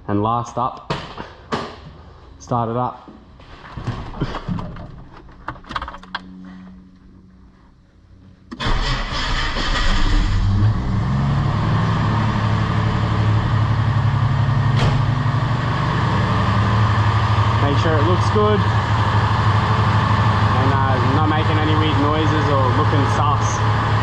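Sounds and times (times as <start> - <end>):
car engine starting and idling: 8.5 - 24.0.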